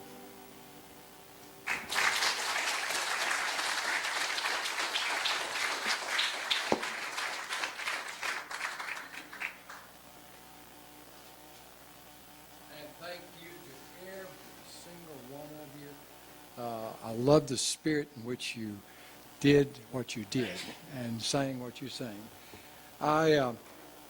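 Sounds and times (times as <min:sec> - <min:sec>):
congregation applauding: 0:01.6 - 0:10.0.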